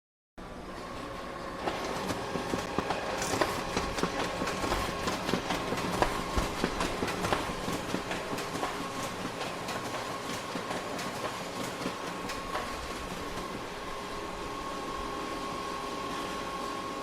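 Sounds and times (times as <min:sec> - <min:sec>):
office printer whirring: 0:00.4 - 0:17.0
printer clicking and clatter: 0:01.6 - 0:13.7.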